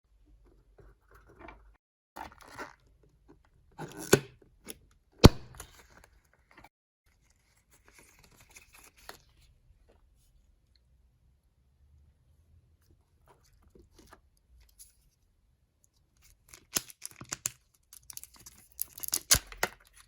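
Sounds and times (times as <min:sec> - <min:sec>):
sharp loud snap: 0:05.2 - 0:05.6
wrapper tearing and crinkling: 0:16.5 - 0:20.0.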